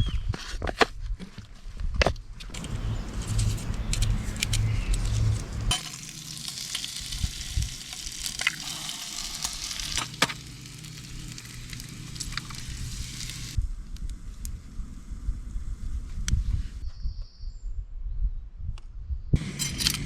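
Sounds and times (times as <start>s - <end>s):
low rumble: 2.5s - 16.9s
bacon sizzling in a frying pan: 2.6s - 13.6s.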